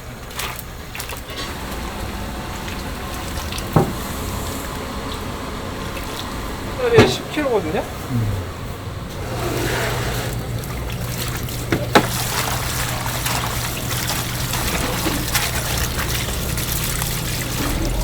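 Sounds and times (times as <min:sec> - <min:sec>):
liquid trickling and pouring: 0:00.3 - 0:07.5, 0:09.6 - 0:18.0
low machine hum: 0:00.8 - 0:18.0.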